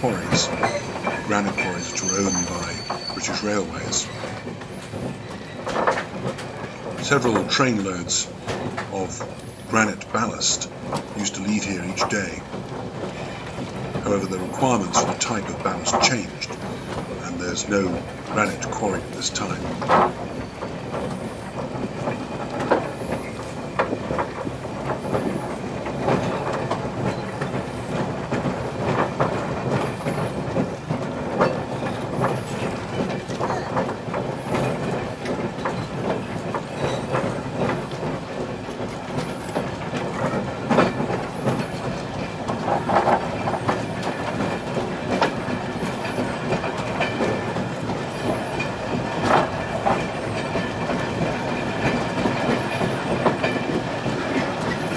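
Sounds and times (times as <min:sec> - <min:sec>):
train wheels clattering on rails: 0:00.0 - 0:54.9.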